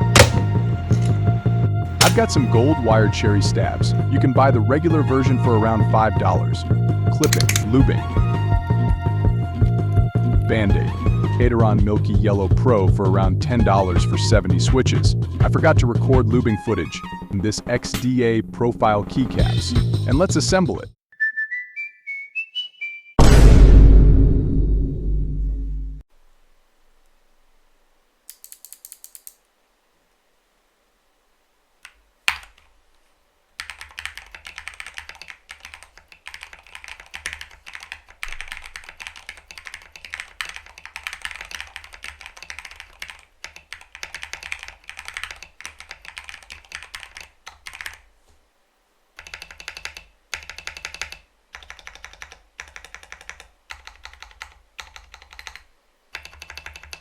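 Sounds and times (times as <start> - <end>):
sharp key clack: 0.0 - 1.2, 2.0 - 2.6, 7.2 - 7.7
mechanical keyboard typing: 7.2 - 7.6, 32.3 - 32.6, 33.6 - 48.0, 49.2 - 57.0.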